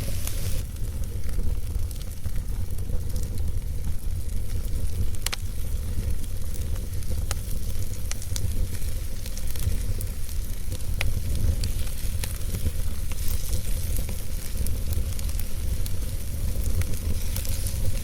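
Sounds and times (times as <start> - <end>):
campfire crackling and popping: 0.0 - 18.0
fire hissing: 0.0 - 18.0.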